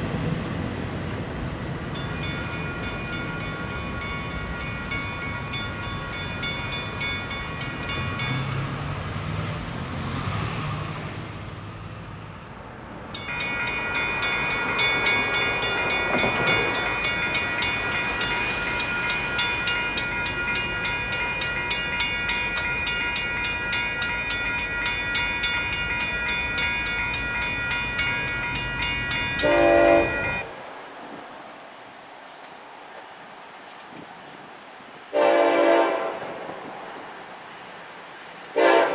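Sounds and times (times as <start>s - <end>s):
train diesel engine drone: 0.0s - 38.9s
railroad warning bell ringing: 1.8s - 8.9s, 13.1s - 30.5s.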